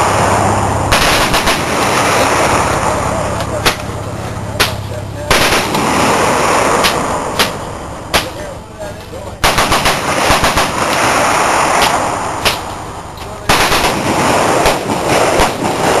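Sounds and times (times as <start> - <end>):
rapid automatic gunfire: 0.9 - 2.5, 4.6 - 8.4, 9.4 - 12.7, 13.5 - 16.0
gunshots: 0.9 - 8.6, 9.4 - 16.0.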